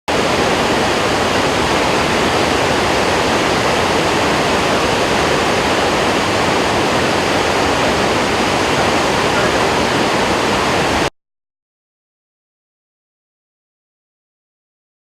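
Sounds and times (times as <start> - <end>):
waterfall rushing: 0.1 - 11.1.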